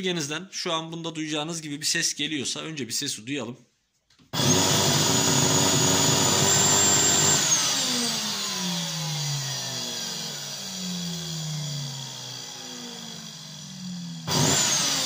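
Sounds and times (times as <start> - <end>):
vacuum cleaner motor whining: 4.4 - 15.0.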